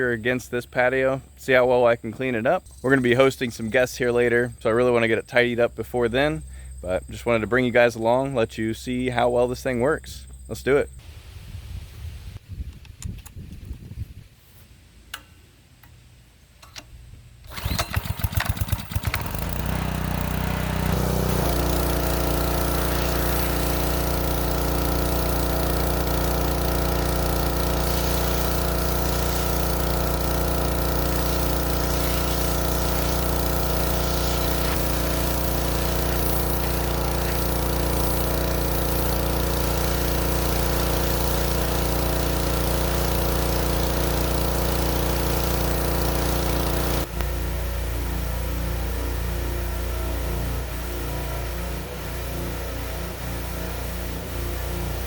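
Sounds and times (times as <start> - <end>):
clicks: 16.6 - 17.0
pressure washer engine: 17.4 - 55.0.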